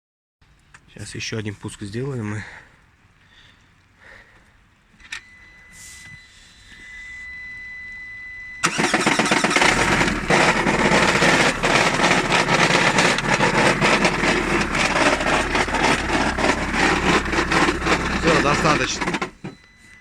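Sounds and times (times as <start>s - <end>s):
steady high beep: 5.2s - 8.7s, 14.3s - 20.0s
car engine knocking: 8.6s - 19.6s.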